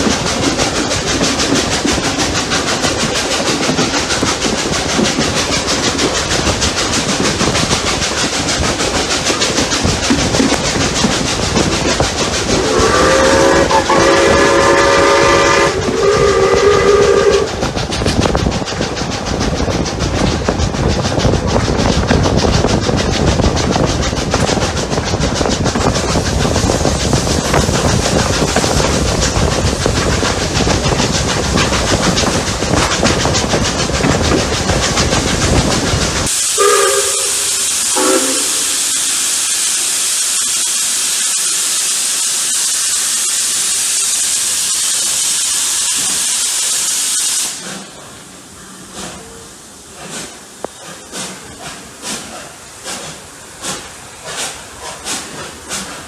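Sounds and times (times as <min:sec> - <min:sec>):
locomotive exhaust beats: 0:00.0 - 0:39.0, 0:47.4 - 0:56.0
rail noise: 0:00.0 - 0:56.0
steam hissing: 0:00.0 - 0:56.0
steam locomotive whistle: 0:12.5 - 0:17.6, 0:36.3 - 0:47.6.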